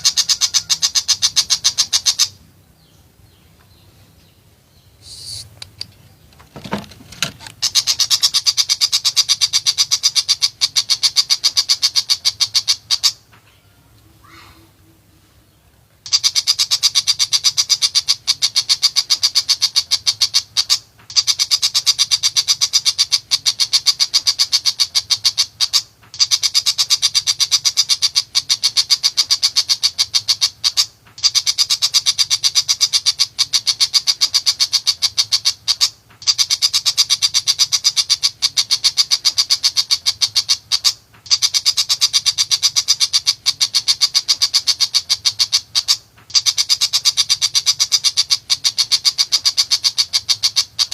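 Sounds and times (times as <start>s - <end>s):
bird harsh chattering song: 0.0s - 13.3s, 14.1s - 50.9s.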